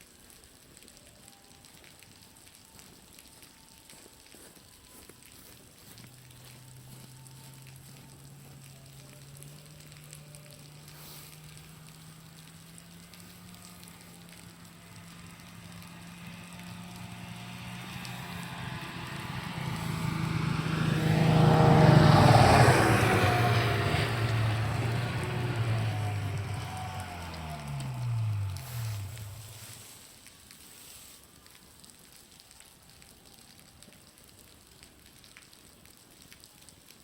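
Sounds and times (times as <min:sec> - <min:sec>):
dripping water: 0:00.0 - 0:37.0
vehicle engine passing by: 0:05.8 - 0:30.1.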